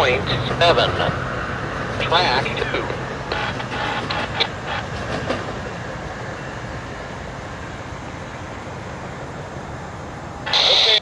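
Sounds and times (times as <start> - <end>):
train rumble: 0.0 - 11.0
train wheels clicking on rail joints: 0.3 - 5.9.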